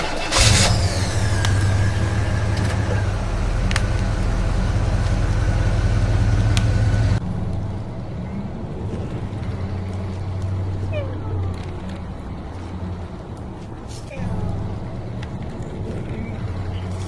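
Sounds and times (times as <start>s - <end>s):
rc truck engine idling: 0.0s - 10.9s.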